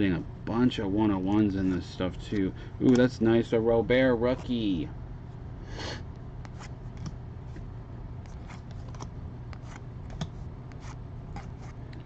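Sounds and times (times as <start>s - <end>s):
steady low hum: 0.0s - 12.0s
cards clicking and rustling: 8.3s - 11.7s.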